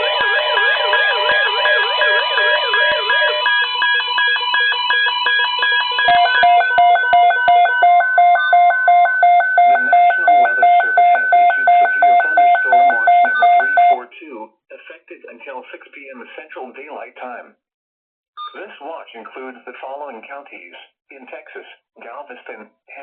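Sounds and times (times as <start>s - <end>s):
siren-like warble: 0.0s - 14.0s
loud two-pitch beep: 0.2s - 14.0s.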